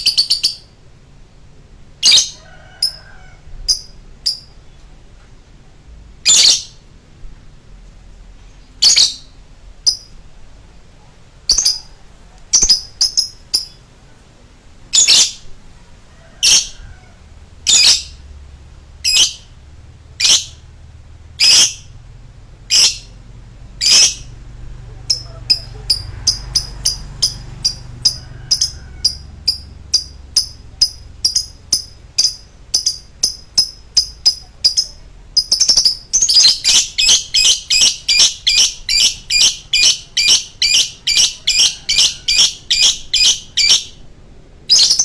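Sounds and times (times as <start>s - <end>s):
lovebird high-pitched calls: 0.0s - 0.8s, 2.0s - 4.7s, 6.2s - 6.8s, 8.7s - 10.2s, 11.5s - 13.8s, 14.9s - 15.5s, 16.4s - 17.0s, 17.6s - 18.3s, 19.0s - 19.6s, 20.2s - 20.8s, 21.4s - 21.9s, 22.7s - 23.2s, 23.8s - 44.0s, 44.7s - 45.0s.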